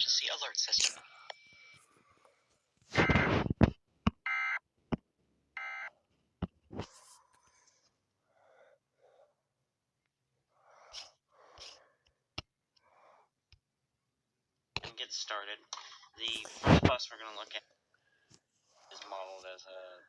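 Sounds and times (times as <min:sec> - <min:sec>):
faint breathy sounds: 0:06.8 - 0:09.7, 0:10.4 - 0:13.4.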